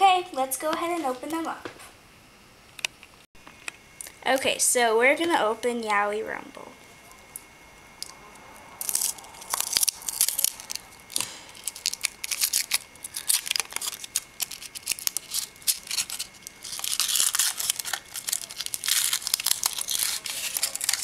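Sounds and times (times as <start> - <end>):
foil wrapper crinkling: 8.8 - 21.0.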